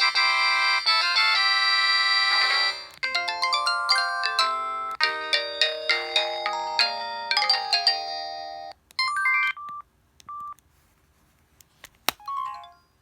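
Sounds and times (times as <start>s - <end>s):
phone ringtone chords: 0.0s - 9.6s.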